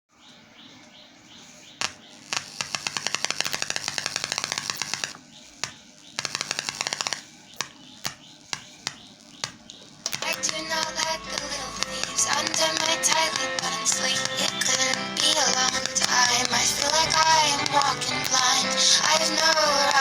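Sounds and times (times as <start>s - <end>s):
sharp clicks: 1.8s - 20.0s
music: 10.1s - 20.0s.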